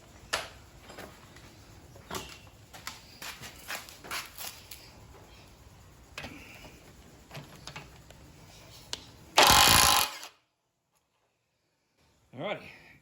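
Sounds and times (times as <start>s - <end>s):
impact wrench hammering: 9.4s - 10.3s.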